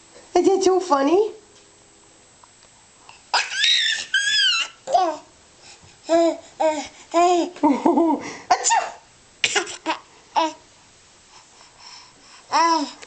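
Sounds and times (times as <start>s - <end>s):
baby laughing: 3.3s - 5.2s, 6.1s - 10.6s.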